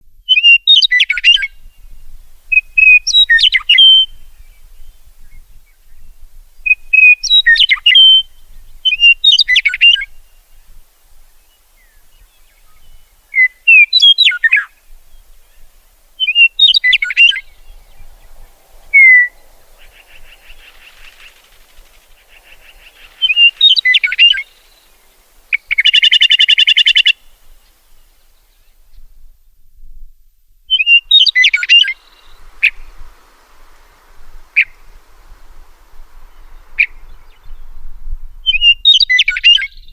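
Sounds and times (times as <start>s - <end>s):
lark singing: 0.3s - 28.6s, 30.7s - 39.9s
buzzy bird trill: 12.6s - 27.7s.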